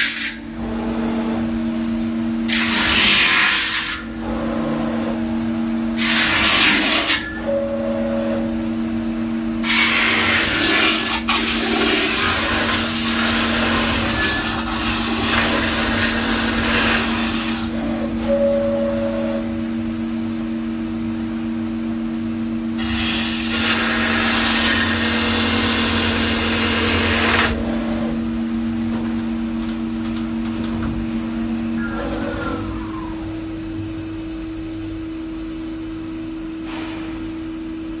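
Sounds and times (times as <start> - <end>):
metal spinning machine motor hum: 0.1 - 36.4.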